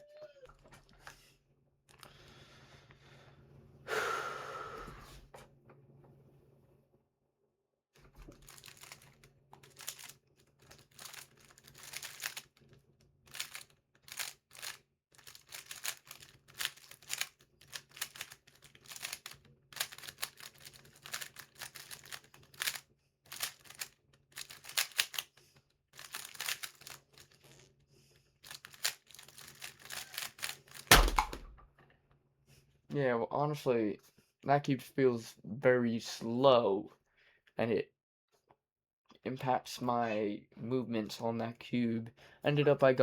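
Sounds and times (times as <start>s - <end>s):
speed cube clattering clicks: 8.5s - 12.5s, 13.3s - 25.3s, 26.0s - 27.1s, 28.5s - 31.6s.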